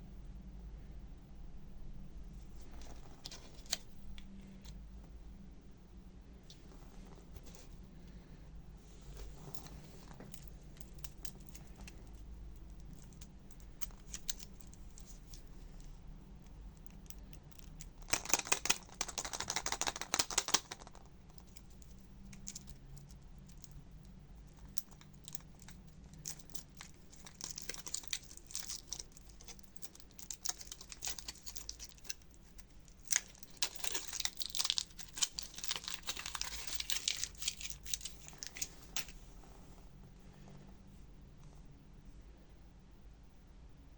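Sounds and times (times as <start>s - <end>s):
wrapper crinkling and tearing: 9.4s - 15.4s, 16.8s - 22.8s, 24.6s - 39.2s.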